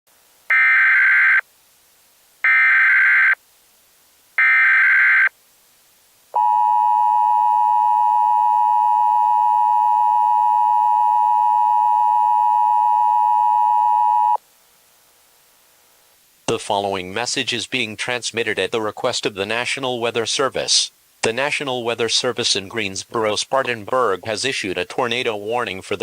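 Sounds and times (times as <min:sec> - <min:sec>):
two-tone attention signal: 0:06.4 - 0:14.4.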